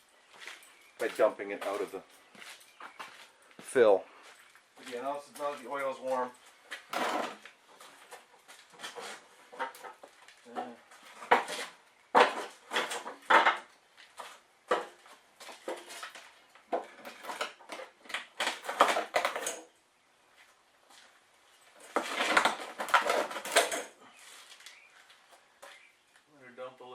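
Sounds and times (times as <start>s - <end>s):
metal clanks and scrapes: 6.8s - 7.5s, 21.8s - 24.0s.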